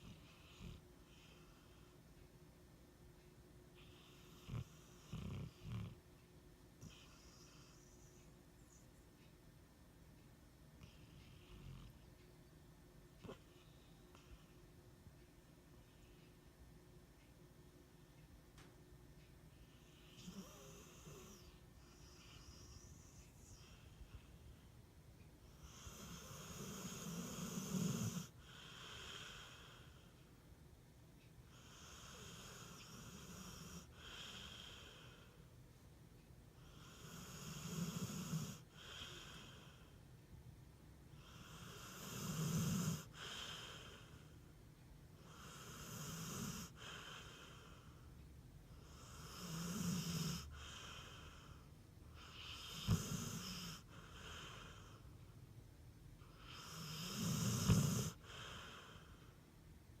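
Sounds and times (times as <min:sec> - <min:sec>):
dog snoring raspy and wheezy: 0:00.0 - 0:01.8, 0:03.8 - 0:06.0, 0:06.8 - 0:08.2, 0:19.7 - 0:24.0, 0:25.4 - 0:30.1, 0:31.5 - 0:35.4, 0:36.6 - 0:39.9, 0:41.1 - 0:44.4, 0:45.2 - 0:48.0, 0:48.7 - 0:55.0, 0:56.2 - 0:59.2.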